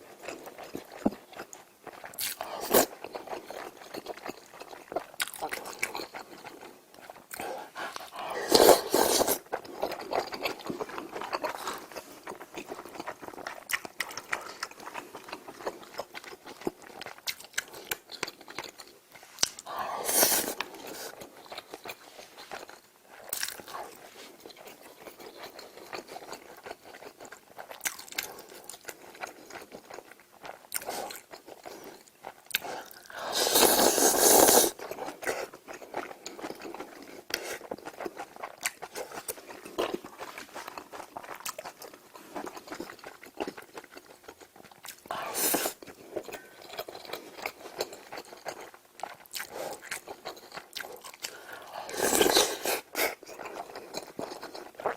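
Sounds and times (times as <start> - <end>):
person chewing and biting: 22.6 - 54.9.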